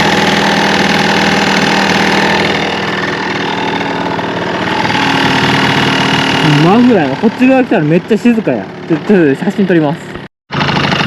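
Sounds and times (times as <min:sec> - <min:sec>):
muffler rattle: 0:00.0 - 0:09.5
scooter engine idling: 0:00.0 - 0:11.0.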